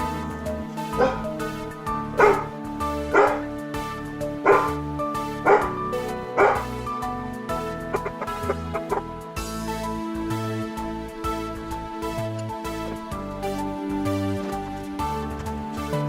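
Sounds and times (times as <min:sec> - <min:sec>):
background music: 0:00.0 - 0:16.0
dog barking: 0:00.9 - 0:03.6, 0:04.4 - 0:06.8, 0:07.9 - 0:09.1.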